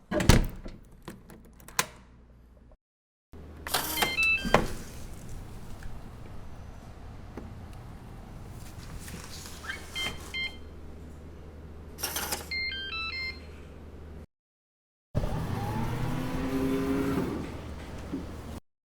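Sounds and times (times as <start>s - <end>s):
door sound with low tones: 0.0s - 2.0s
keypad beeps: 3.7s - 4.7s, 10.0s - 10.6s.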